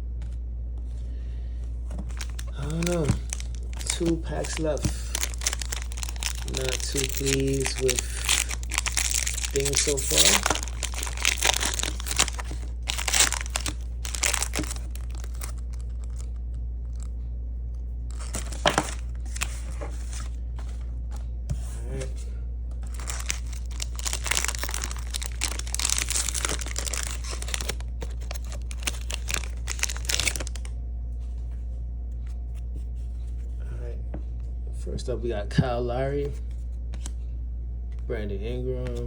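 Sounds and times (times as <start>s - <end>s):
steady low hum: 0.0s - 39.0s
plastic wrapper crinkling and tearing: 2.0s - 17.2s, 18.1s - 20.3s, 22.8s - 30.7s.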